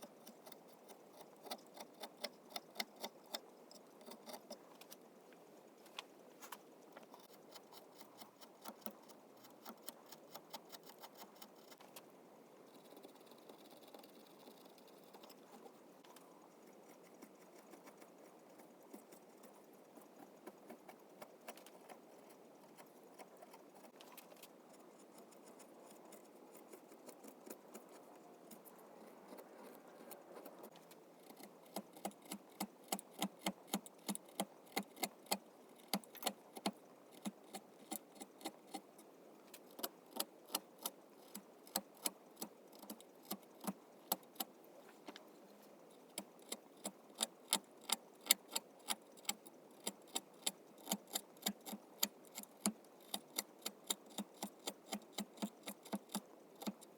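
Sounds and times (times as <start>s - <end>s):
carving tools scraping wood: 0.0s - 4.7s, 25.0s - 38.9s, 46.0s - 56.9s.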